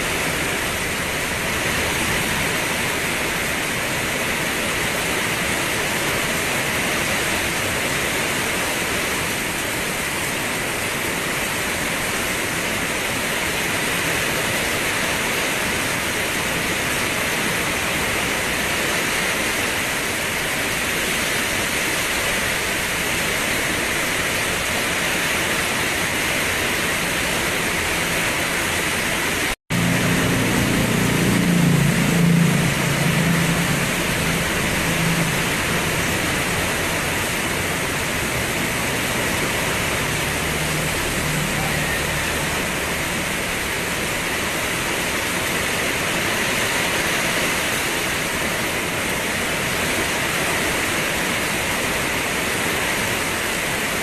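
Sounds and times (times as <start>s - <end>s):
dense rainfall hiss: 0.0s - 54.0s
low rumble: 29.7s - 45.2s.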